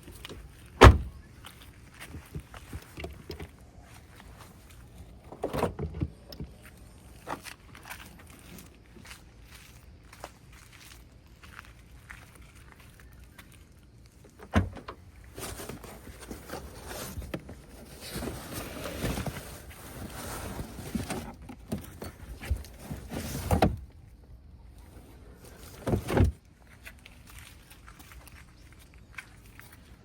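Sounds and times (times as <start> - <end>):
rustling and shuffling: 0.0 - 24.1, 24.8 - 30.0
car cabin clunk: 0.8 - 1.1, 14.4 - 15.0.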